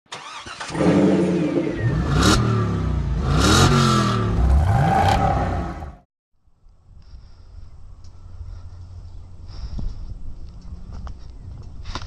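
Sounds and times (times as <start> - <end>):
car engine revving: 0.3 - 6.0.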